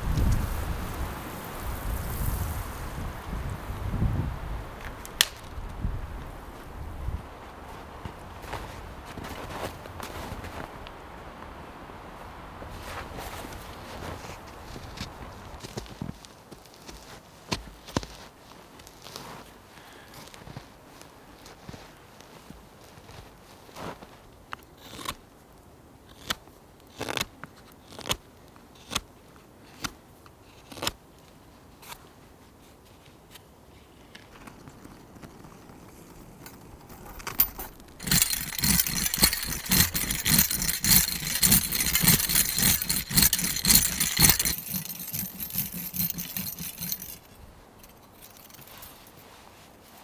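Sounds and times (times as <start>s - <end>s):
hand saw cutting wood: 37.4s - 47.2s.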